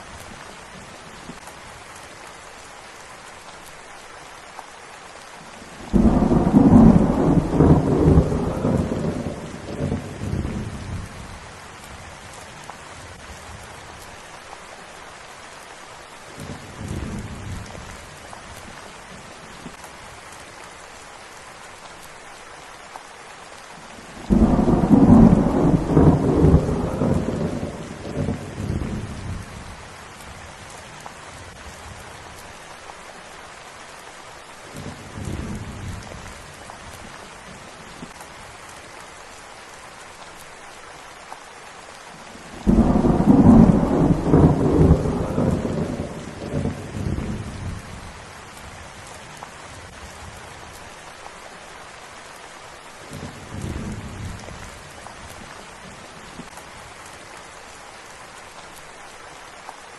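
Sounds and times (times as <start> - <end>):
steady rain: 0.0 - 59.9
thunder rumbling: 5.8 - 11.4, 24.2 - 29.8, 42.5 - 48.2.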